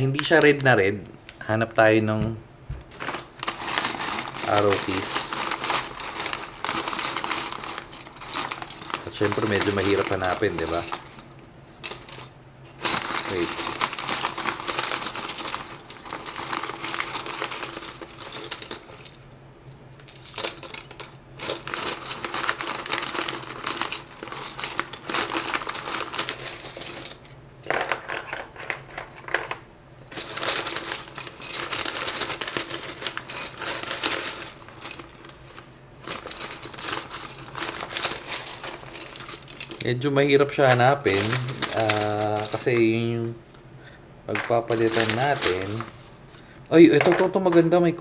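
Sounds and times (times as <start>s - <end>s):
plastic keycaps clattering: 2.8s - 19.4s, 20.0s - 43.4s, 44.3s - 47.8s.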